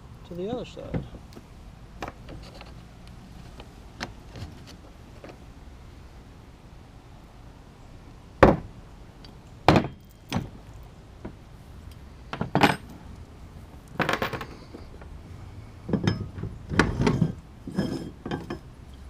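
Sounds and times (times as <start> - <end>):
metal hardware clinking: 11.8 - 13.0, 15.9 - 19.0.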